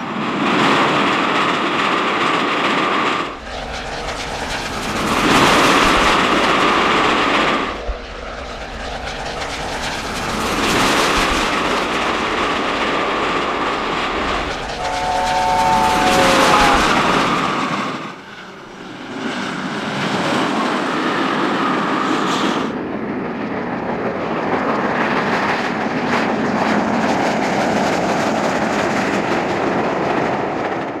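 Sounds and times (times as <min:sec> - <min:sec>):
model train rushing: 0:00.0 - 0:22.8.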